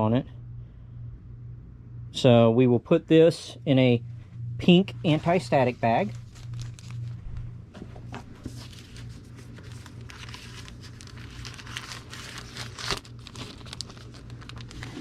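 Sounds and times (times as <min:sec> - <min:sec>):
plastic bag crinkling: 0:05.2 - 0:07.5, 0:08.2 - 0:15.0.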